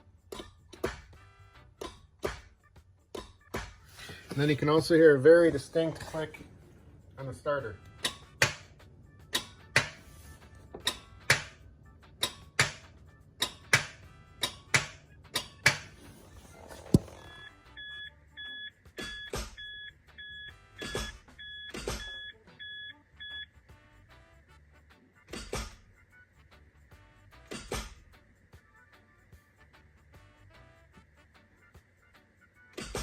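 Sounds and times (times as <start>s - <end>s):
short electronic beeps: 16.9s - 23.5s.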